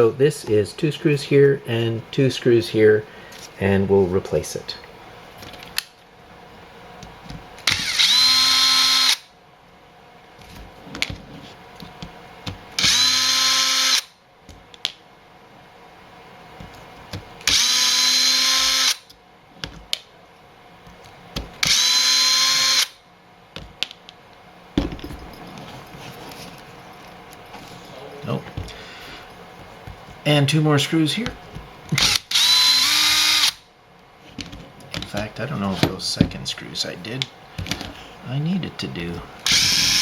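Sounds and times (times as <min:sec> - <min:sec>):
power driver motor whine: 0:07.6 - 0:09.3, 0:12.8 - 0:14.1, 0:17.4 - 0:19.0, 0:21.6 - 0:23.0, 0:32.0 - 0:33.6, 0:39.4 - 0:40.0.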